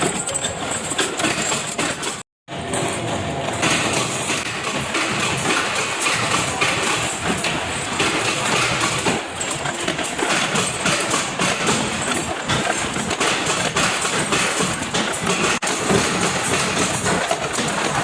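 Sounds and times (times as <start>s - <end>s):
factory machinery clattering: 0.0s - 18.0s.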